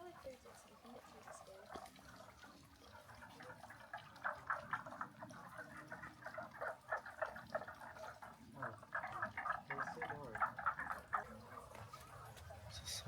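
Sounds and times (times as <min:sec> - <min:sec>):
frogs croaking in chorus: 0:01.3 - 0:02.0, 0:03.4 - 0:13.0.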